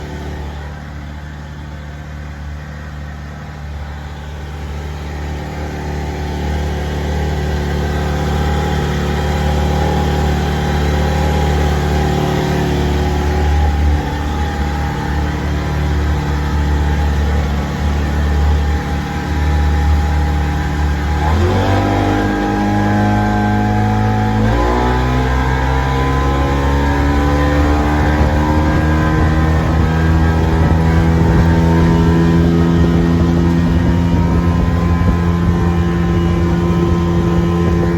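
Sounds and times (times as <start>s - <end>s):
outboard motor running: 0.0s - 37.9s.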